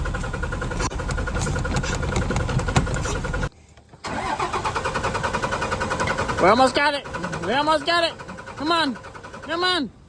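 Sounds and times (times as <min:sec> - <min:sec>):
truck engine cranking: 0:00.0 - 0:10.0.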